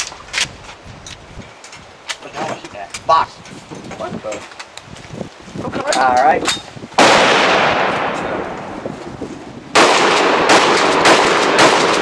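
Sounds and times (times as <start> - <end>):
gunshots with echo: 7.0 - 8.5, 9.8 - 12.0.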